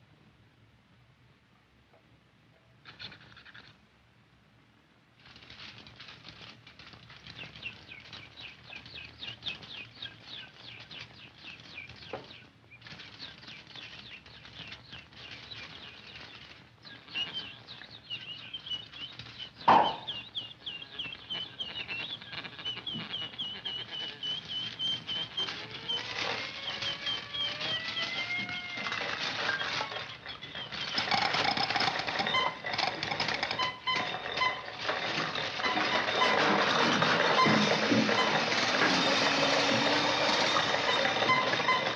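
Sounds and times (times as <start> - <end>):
rapid mechanical clicking: 5.2 - 16.6, 24.4 - 41.9
high chirping squeaks: 7.3 - 41.9
sliding squeaky whistles: 7.5 - 41.9
dense clatter: 28.8 - 41.9.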